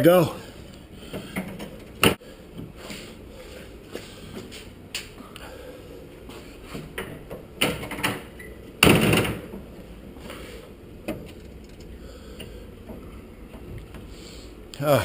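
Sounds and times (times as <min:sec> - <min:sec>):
loud door clunk: 0:08.8 - 0:09.6.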